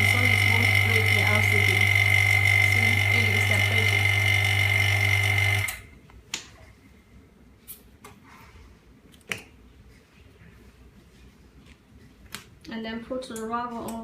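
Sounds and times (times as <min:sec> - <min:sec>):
vacuum pump humming and whining: 0:00.0 - 0:06.0.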